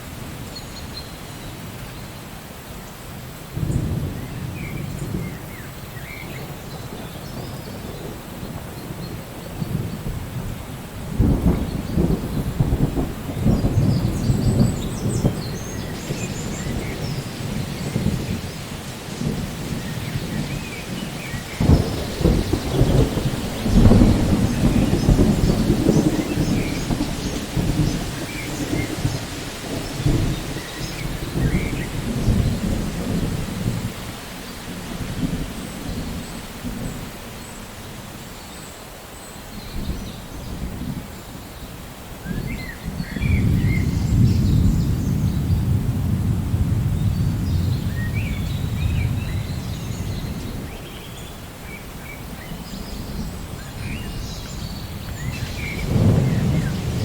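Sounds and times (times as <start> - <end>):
steady rain: 0.0 - 57.0
rolling thunder: 3.5 - 38.0, 42.2 - 57.0
sharp thunder crack: 11.1 - 34.0, 54.8 - 57.0.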